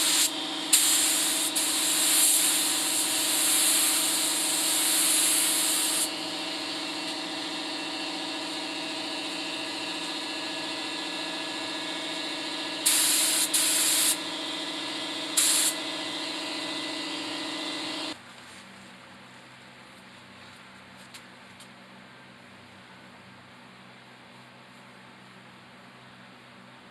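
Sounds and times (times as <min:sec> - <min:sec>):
spray gun hissing: 0:00.0 - 0:06.2, 0:12.8 - 0:18.0
spray rig motor hum: 0:00.0 - 0:18.2.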